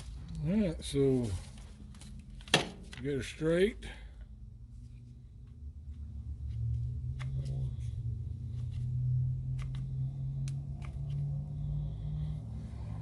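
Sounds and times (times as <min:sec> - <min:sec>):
low hum: 0:03.9 - 0:13.0.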